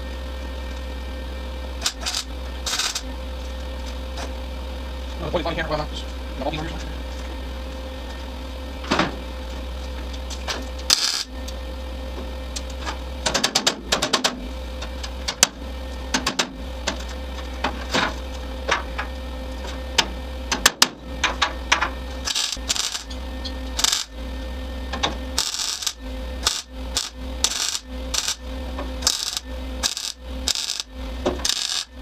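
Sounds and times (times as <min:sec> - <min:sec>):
steady low hum: 0:00.0 - 0:32.0
metal parts clicking and clinking: 0:01.8 - 0:03.0, 0:21.3 - 0:23.2, 0:23.8 - 0:24.1, 0:25.4 - 0:28.4, 0:29.0 - 0:32.0.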